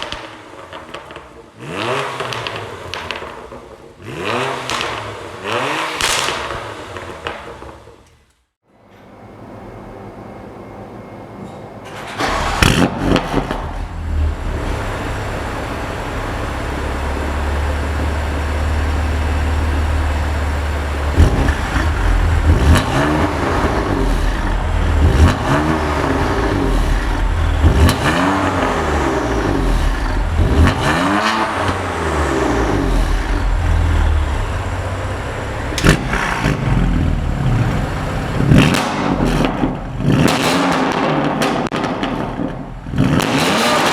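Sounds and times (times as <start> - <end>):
car engine idling and revving: 0.0 - 8.3, 12.2 - 43.9
exhaust cracks: 0.0 - 8.4, 12.0 - 43.9.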